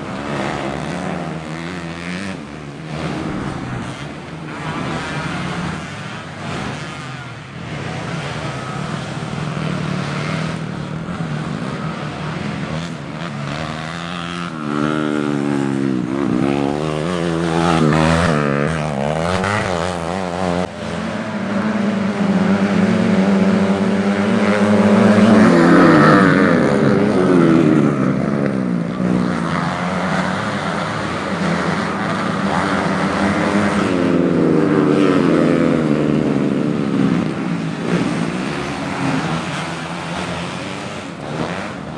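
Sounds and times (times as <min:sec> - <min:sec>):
motorcycle engines revving hard: 0:00.0 - 0:41.9.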